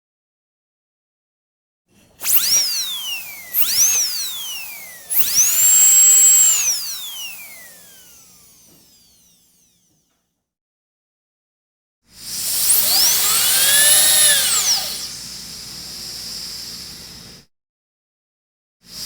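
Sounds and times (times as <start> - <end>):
dentist's drill whining: 2.0 - 10.0, 12.2 - 17.4.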